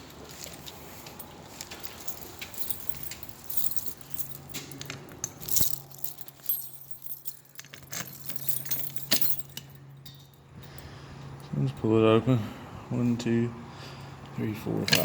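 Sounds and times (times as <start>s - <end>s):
keys jangling: 0.4s - 10.9s, 14.8s - 15.0s.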